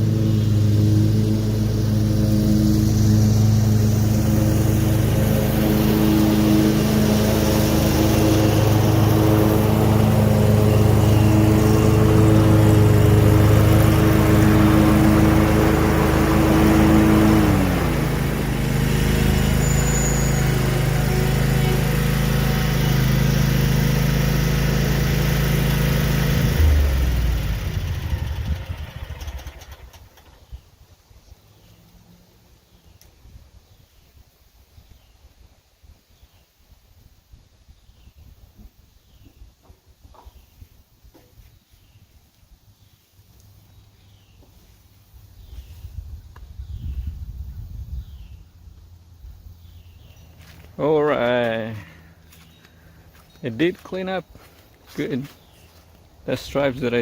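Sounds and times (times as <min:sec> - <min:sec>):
mower engine running: 0:00.0 - 0:30.5, 0:48.9 - 0:57.0.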